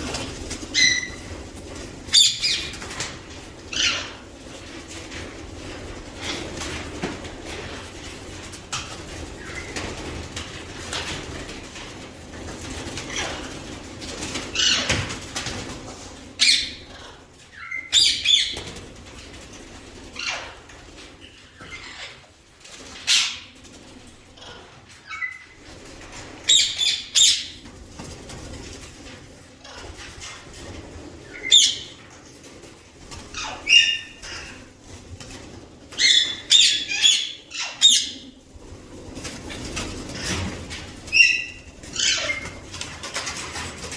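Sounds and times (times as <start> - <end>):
parrots flapping wings: 0.0 - 17.2, 17.8 - 43.9
parrots calling: 36.0 - 38.2, 41.1 - 42.6.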